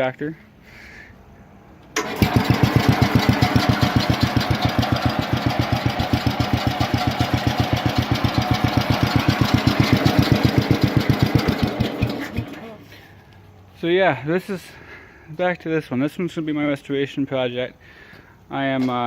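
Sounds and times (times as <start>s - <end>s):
garden tractor engine running: 2.0s - 13.0s.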